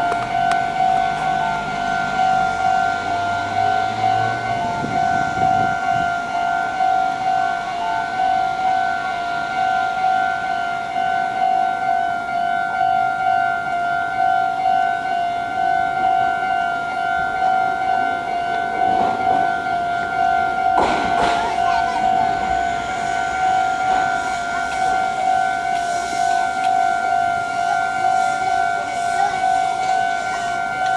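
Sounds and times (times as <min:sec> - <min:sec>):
level-crossing warning bell: 0:00.0 - 0:30.9.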